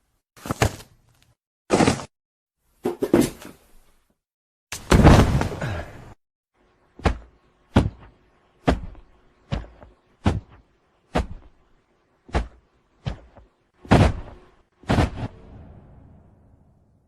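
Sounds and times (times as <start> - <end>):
heavy body-fall thuds: 4.9 - 5.8.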